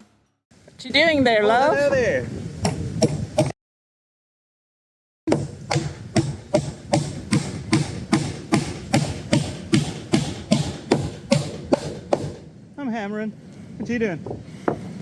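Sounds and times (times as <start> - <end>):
hammer driving nails: 5.3 - 12.5.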